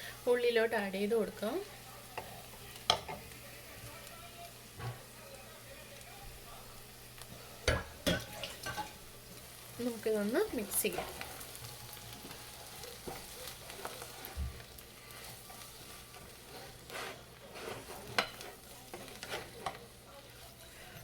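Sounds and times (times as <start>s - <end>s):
food sizzling: 0.0s - 21.0s
spoon scraping a frying pan: 7.5s - 9.1s, 10.4s - 21.0s.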